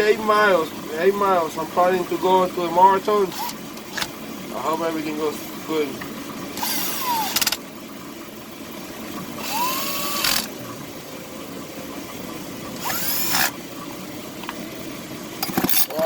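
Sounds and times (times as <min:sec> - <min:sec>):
chainsaw recoil starter cord pulls: 0:03.3 - 0:04.2, 0:06.6 - 0:07.6.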